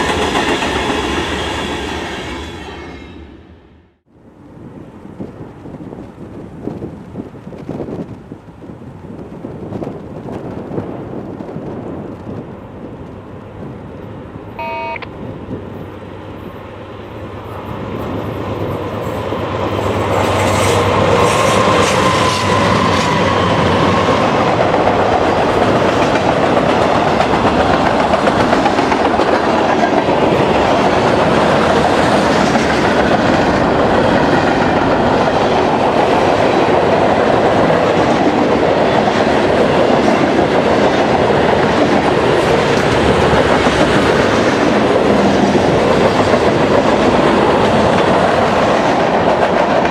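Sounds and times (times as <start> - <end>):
train wheels clattering on rails: 0.0 - 2.0, 18.0 - 49.9
wind buffeting microphone: 4.1 - 14.5, 15.1 - 49.9
train horn: 14.6 - 15.1.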